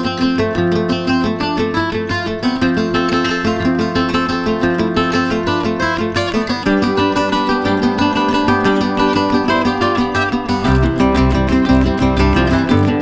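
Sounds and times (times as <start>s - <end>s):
plucked acoustic guitar: 0.0s - 13.0s.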